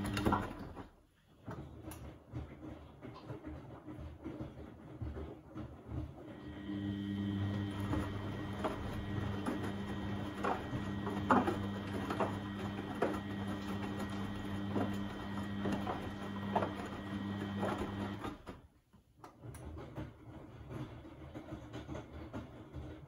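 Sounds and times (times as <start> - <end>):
washing machine motor hum: 0.0 - 23.0.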